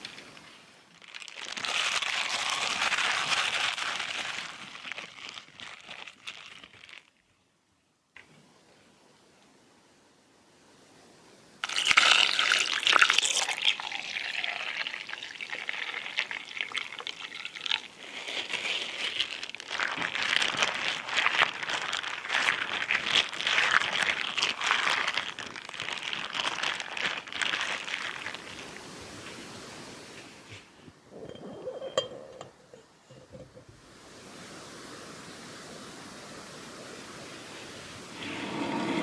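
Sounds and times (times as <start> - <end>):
water pouring and splashing: 11.6 - 30.6.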